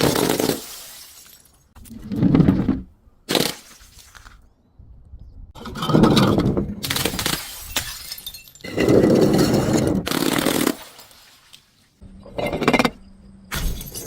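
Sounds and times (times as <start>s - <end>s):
glass bottles breaking: 0.0s - 1.8s, 6.0s - 11.6s, 13.5s - 14.0s.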